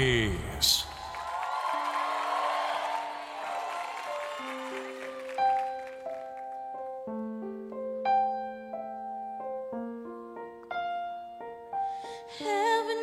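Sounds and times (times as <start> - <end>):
slow solo piano: 4.5 - 13.0.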